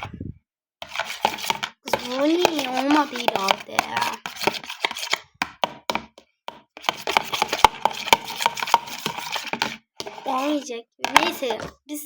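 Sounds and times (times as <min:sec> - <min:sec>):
spoon stirring and scraping: 0:00.8 - 0:11.8
spoon tapping container sides: 0:00.8 - 0:11.8.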